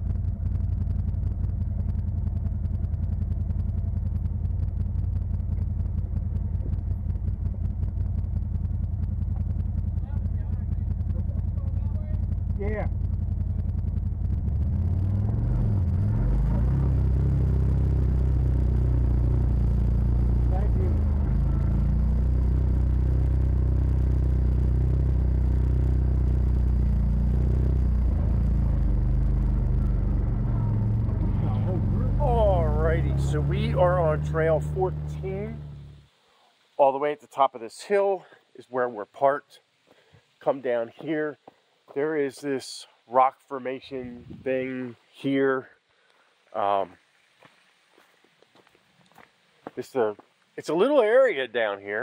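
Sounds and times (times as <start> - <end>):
utility vehicle engine running: 0.0 - 36.1.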